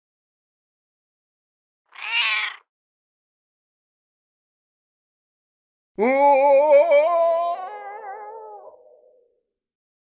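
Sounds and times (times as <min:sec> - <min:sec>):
cat meowing: 0:01.9 - 0:02.7.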